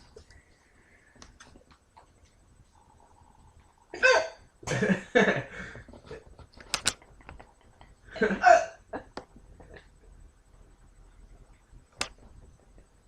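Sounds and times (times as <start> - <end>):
person hiccuping: 4.0 - 4.4, 8.4 - 8.8.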